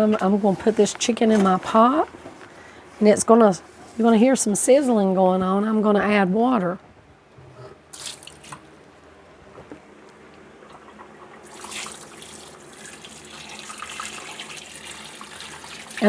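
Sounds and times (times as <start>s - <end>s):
water pouring into a pot: 8.0s - 8.6s, 11.4s - 16.0s.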